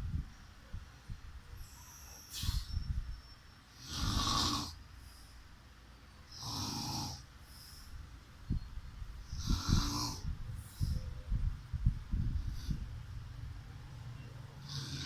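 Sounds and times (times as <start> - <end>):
person snoring: 3.8 - 4.8, 9.4 - 10.2, 14.6 - 15.0.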